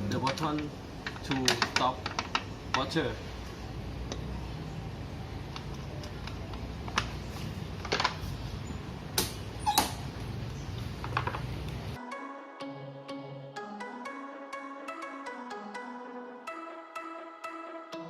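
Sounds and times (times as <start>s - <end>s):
background music: 12.0s - 18.0s.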